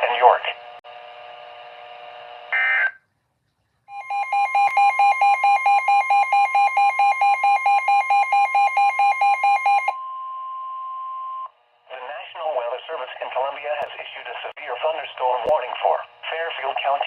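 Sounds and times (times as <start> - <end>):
pulsing beep: 3.9 - 11.5.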